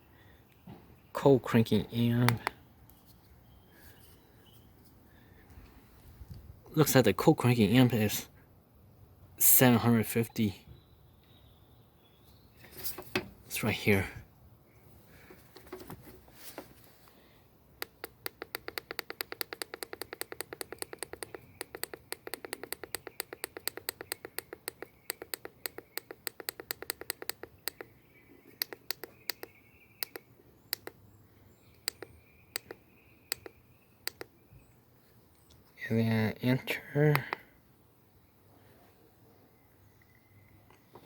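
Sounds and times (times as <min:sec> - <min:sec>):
keypad button clicking: 0:17.8 - 0:27.9, 0:28.6 - 0:31.0, 0:31.8 - 0:34.3.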